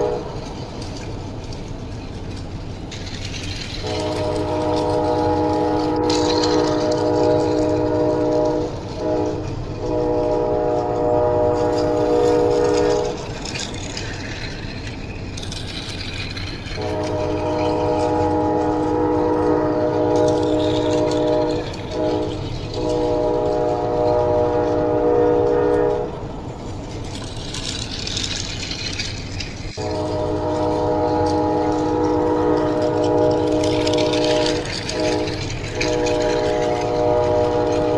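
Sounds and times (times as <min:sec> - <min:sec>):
train horn blasts: 0:00.0 - 0:00.9, 0:03.7 - 0:14.2, 0:16.3 - 0:26.4, 0:29.8 - 0:37.9
train rumbling: 0:00.0 - 0:37.9.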